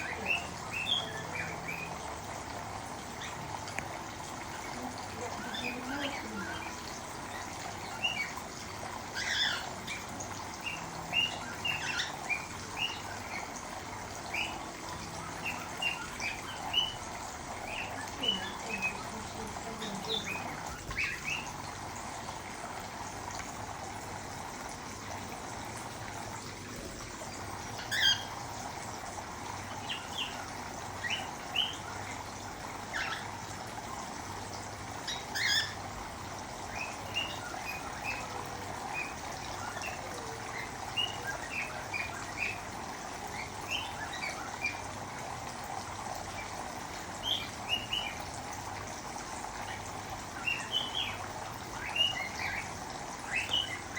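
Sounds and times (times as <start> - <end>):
running water hissing: 0.0 - 53.9
cockatiels chirping: 9.2 - 10.0, 27.8 - 28.3, 35.1 - 35.8.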